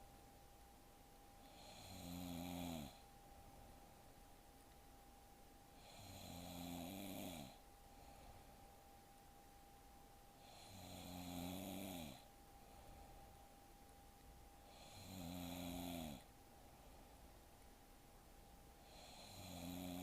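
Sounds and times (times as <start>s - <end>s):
faint steady tone: 0.0s - 20.0s
woman snoring faintly: 1.4s - 3.0s, 5.8s - 7.6s, 10.4s - 12.3s, 14.7s - 16.3s, 18.8s - 20.0s.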